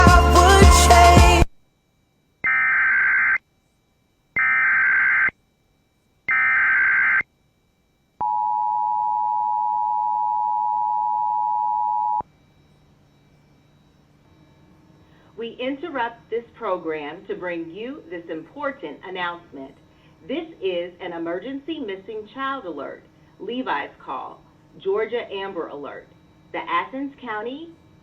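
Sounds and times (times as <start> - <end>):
digital data bursts: 4.4 - 5.3, 6.3 - 7.3.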